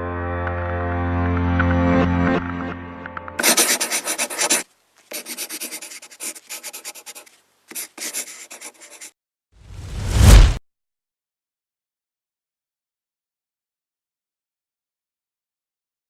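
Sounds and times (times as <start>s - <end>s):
rapid rubbing strokes: 3.4s - 9.1s.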